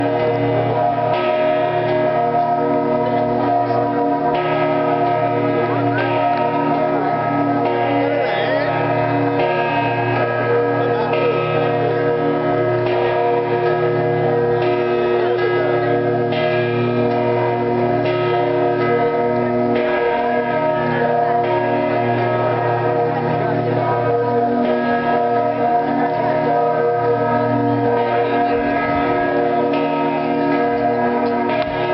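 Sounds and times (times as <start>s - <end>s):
church bells ringing: 0.0s - 31.9s.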